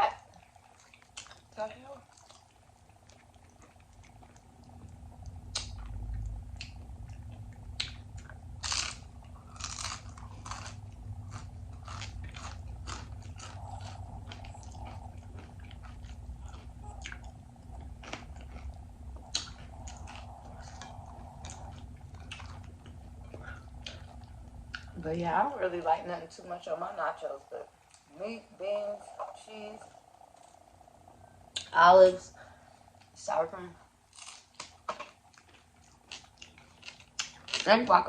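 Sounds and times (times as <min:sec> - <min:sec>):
wet mouth sounds: 0:00.3 - 0:10.7, 0:11.3 - 0:25.0
chips crunching: 0:07.8 - 0:24.2, 0:34.1 - 0:37.9.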